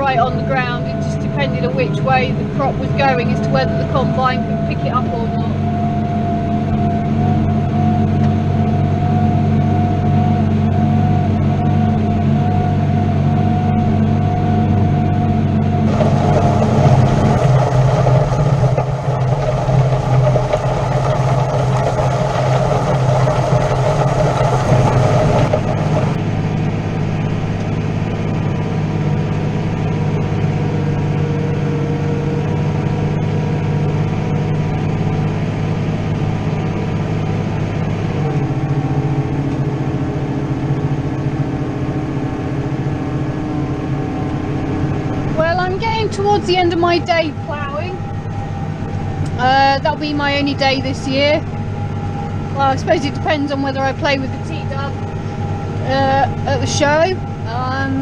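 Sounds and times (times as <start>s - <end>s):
tractor diesel engine running: 0.0s - 58.0s.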